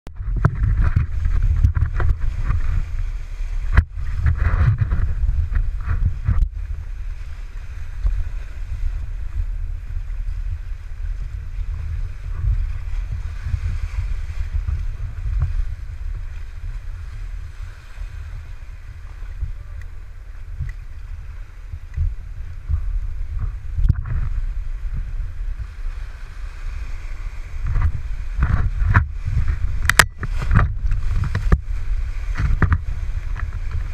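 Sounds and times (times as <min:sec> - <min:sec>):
wind buffeting microphone: 0:00.1 - 0:33.9
rushing river water: 0:00.2 - 0:33.9.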